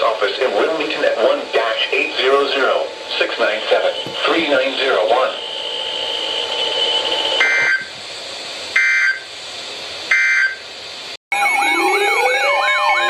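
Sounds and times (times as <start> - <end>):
steady beeping tones: 11.3 - 13.0
sweeping electronic alert tones: 11.3 - 13.0.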